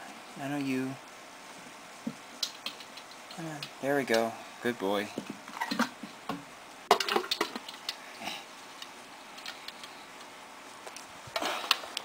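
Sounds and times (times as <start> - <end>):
container clicking and knocking: 6.9 - 7.9.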